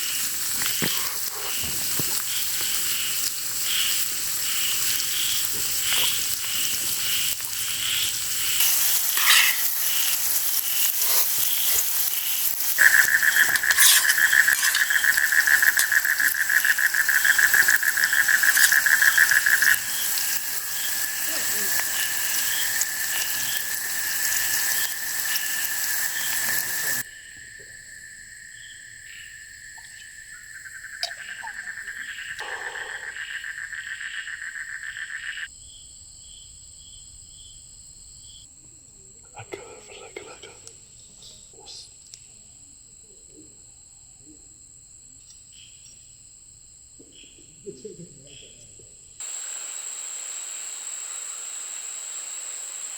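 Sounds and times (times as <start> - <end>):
loud hiss with crackles: 0.0 - 27.1, 49.2 - 52.9
crickets and insects chirring: 0.0 - 52.9.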